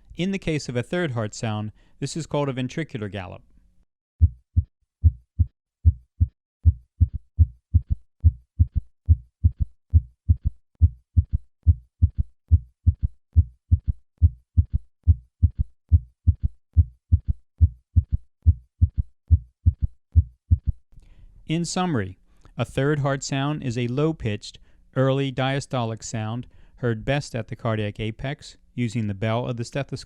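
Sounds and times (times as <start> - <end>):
heartbeat gallop rhythm: 4.2 - 20.8.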